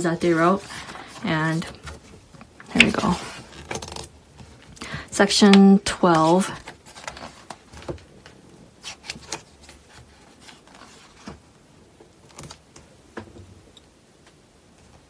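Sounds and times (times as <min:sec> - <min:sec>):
paper pages rustling: 0:00.0 - 0:04.7, 0:05.9 - 0:11.4.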